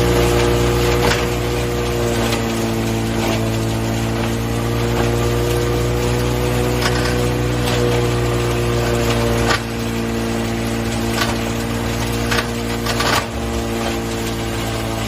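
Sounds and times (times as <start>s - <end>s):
hammer-mill grinder drone: 0.0s - 15.0s.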